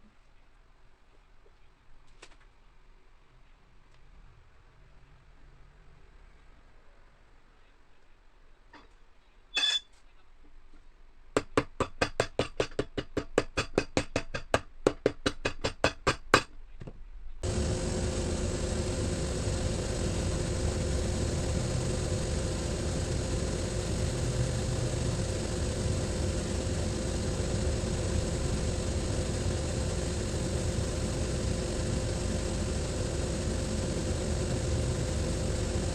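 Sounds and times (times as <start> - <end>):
electric machine motor humming: 17.4 - 35.9.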